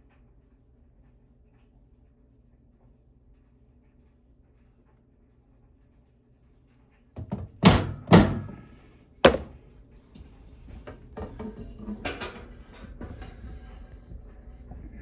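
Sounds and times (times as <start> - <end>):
hammer knocking microwave: 7.2 - 9.6.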